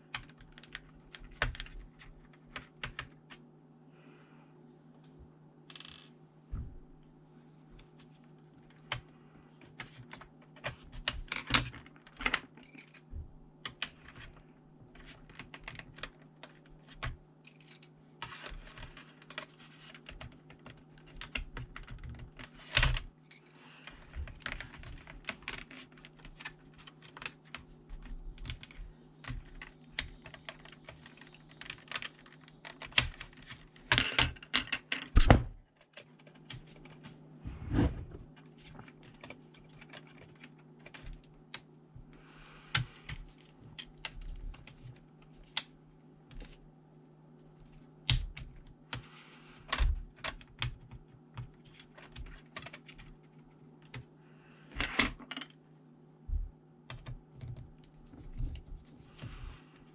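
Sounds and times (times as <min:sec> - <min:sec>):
laptop parts clicking and rattling: 0:00.0 - 0:03.4, 0:07.8 - 0:37.2, 0:38.3 - 0:41.7, 0:42.6 - 0:46.6, 0:47.6 - 0:54.1, 0:56.9 - 0:59.4
steady low hum: 0:00.0 - 0:34.4, 0:35.1 - 0:59.9.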